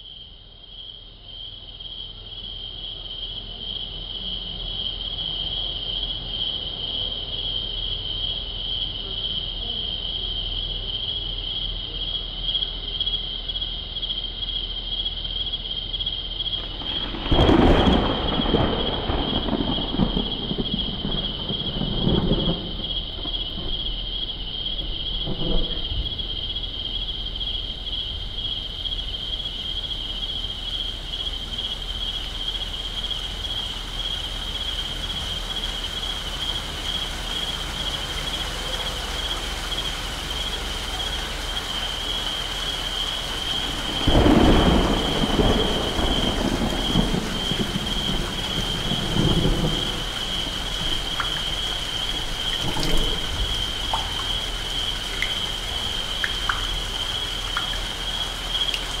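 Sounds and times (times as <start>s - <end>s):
crickets chirring: 0.0s - 59.0s
steady rain hiss: 16.3s - 59.0s
water drips ticking: 16.4s - 59.0s
thunder rolling: 16.5s - 59.0s.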